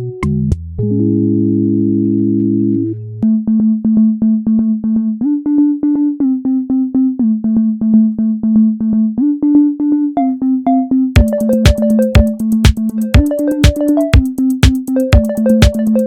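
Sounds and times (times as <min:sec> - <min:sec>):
synthesizer quick repeated notes: 0:09.2 - 0:16.0.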